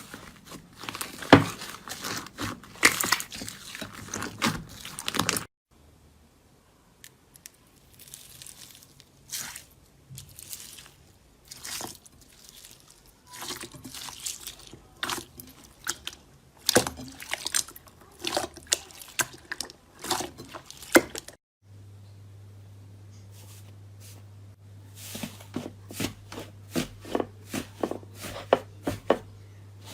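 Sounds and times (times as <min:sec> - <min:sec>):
slime squishing: 0:00.0 - 0:05.5, 0:07.6 - 0:21.4.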